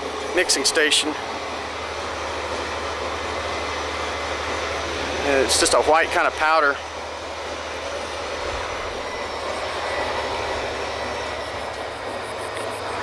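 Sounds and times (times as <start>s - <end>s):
drilling rig machinery drone: 0.0s - 13.0s.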